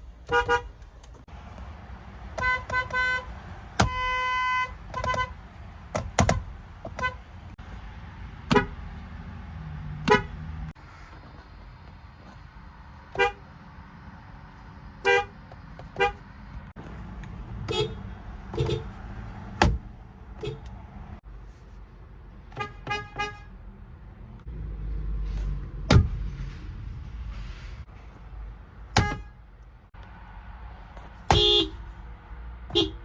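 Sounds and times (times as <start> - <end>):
low rumble of engines: 0.0 - 33.0
car horns honking: 0.2 - 0.8, 2.3 - 7.4, 8.4 - 8.9, 10.0 - 10.6, 13.1 - 13.5, 15.0 - 16.4, 17.6 - 20.8, 22.5 - 23.6, 28.9 - 29.5, 31.2 - 32.0, 32.7 - 33.0.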